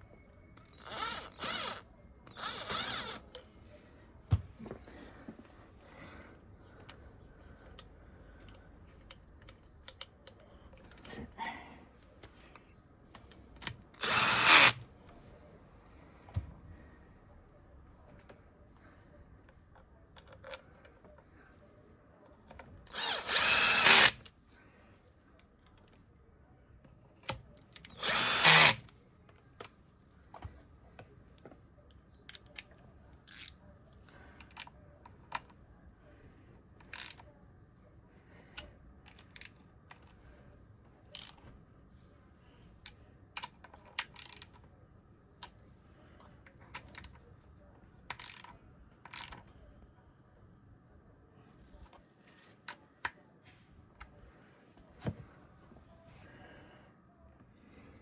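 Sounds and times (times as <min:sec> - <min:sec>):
handheld power tool running: 0:00.8 - 0:03.2, 0:14.0 - 0:14.8, 0:23.0 - 0:24.2, 0:28.0 - 0:28.8
tools and parts clicking: 0:42.8 - 0:44.6, 0:46.7 - 0:47.2, 0:48.1 - 0:49.5.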